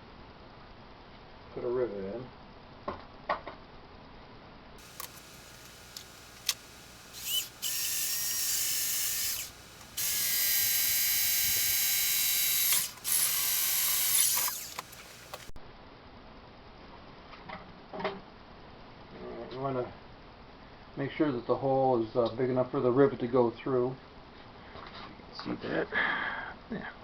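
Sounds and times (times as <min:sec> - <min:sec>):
electric drill boring through metal: 0:04.8 - 0:15.5.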